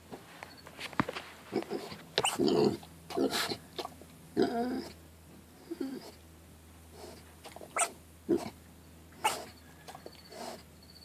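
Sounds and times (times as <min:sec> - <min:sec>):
piglet sneezing: 0:07.0 - 0:08.5, 0:09.2 - 0:09.5.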